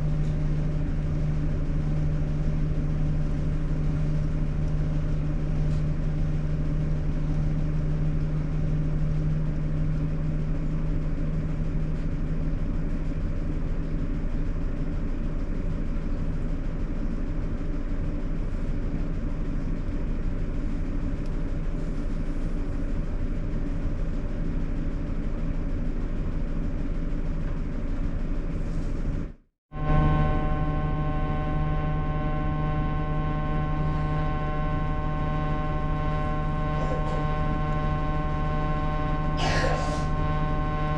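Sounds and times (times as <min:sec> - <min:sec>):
air conditioner droning hum: 0:00.0 - 0:13.8, 0:29.8 - 0:40.9.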